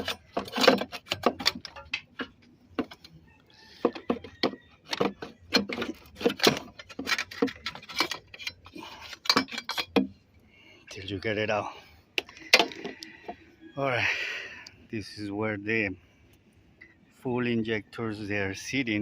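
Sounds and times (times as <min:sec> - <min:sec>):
metallic clicks and rattles: 0:00.0 - 0:03.1, 0:03.8 - 0:10.2.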